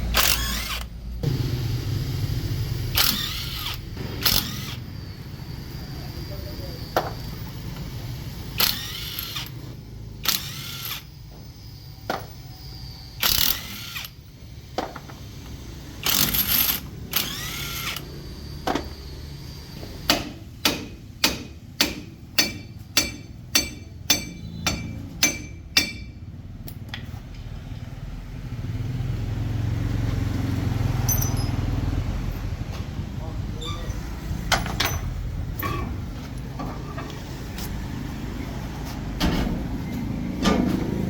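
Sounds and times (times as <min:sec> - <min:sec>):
low rumble: 0:01.0 - 0:05.9
hammer striking metal: 0:20.1 - 0:26.3, 0:31.1 - 0:31.6.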